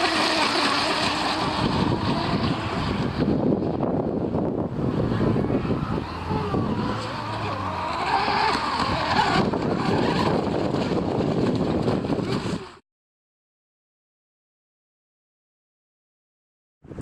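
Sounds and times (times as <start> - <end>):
model boat motor whining: 0.0 - 12.8
wind noise on microphone: 0.0 - 12.8.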